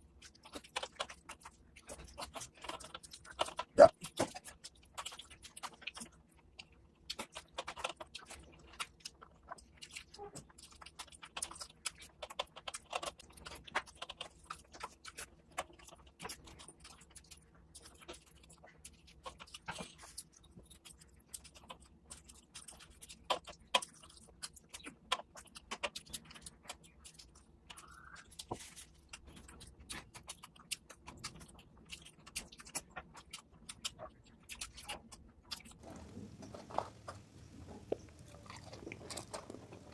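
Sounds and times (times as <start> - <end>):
wet chewing and lip smacking: 0.0 - 39.9.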